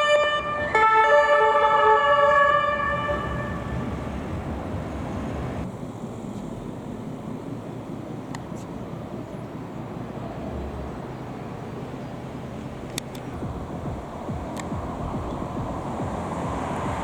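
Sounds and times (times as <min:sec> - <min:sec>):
police siren: 0:00.0 - 0:05.0
road traffic noise: 0:00.0 - 0:17.0.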